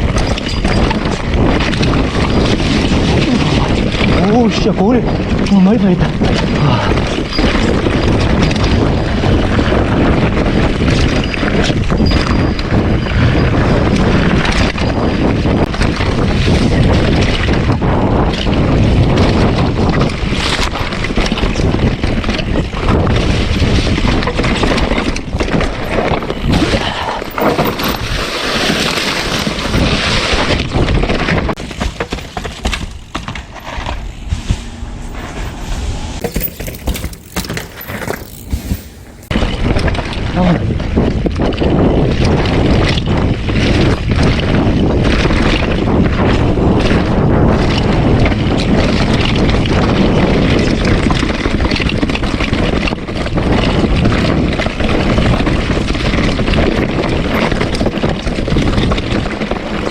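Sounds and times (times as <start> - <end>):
wind buffeting microphone: 0.0 - 59.9
knocks and rustles: 24.0 - 39.4.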